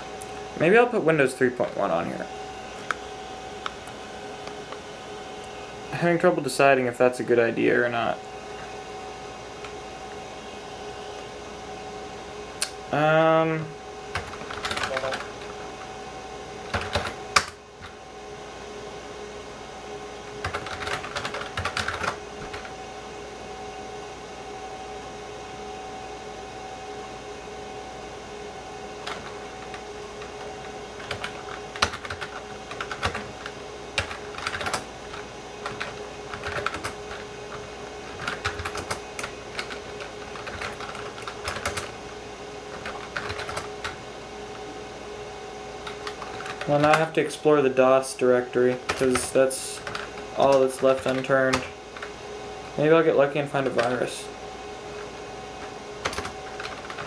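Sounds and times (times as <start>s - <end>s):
steady hum with held tones: 0.0s - 57.0s
typing on computer keyboard: 14.1s - 15.4s, 16.7s - 17.6s, 20.4s - 22.7s, 29.0s - 29.8s, 31.0s - 41.9s, 42.7s - 44.0s, 45.8s - 47.0s, 48.8s - 50.2s, 55.6s - 57.0s.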